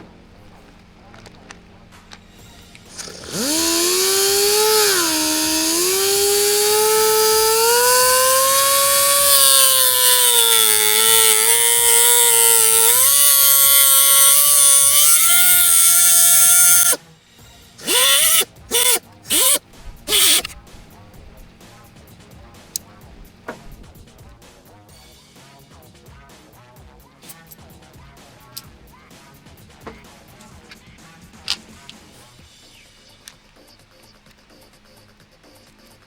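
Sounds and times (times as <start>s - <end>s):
pneumatic cutting tool whining: 2.0s - 17.0s, 17.8s - 21.6s, 22.7s - 24.2s.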